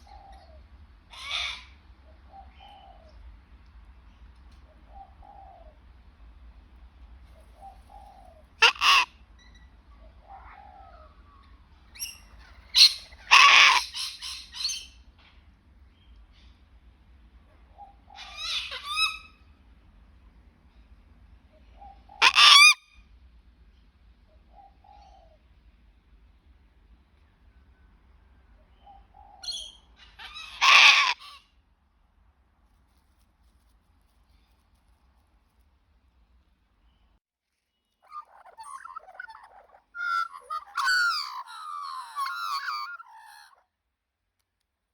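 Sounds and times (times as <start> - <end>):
cockatoo harsh calls: 1.1 - 3.0, 7.7 - 11.4, 12.0 - 14.9, 17.8 - 19.4, 21.8 - 23.0, 29.2 - 31.5, 38.0 - 43.6
cockatoo soft short calls: 38.1 - 43.6
cockatoo harsh screech: 40.0 - 43.6.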